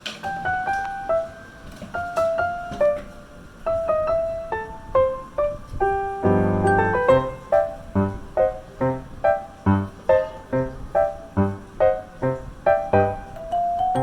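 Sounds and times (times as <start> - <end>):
piano music: 0.0 - 14.0.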